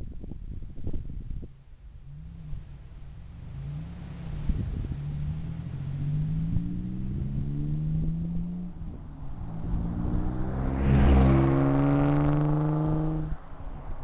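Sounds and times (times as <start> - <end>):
car accelerating past: 3.3 - 14.0.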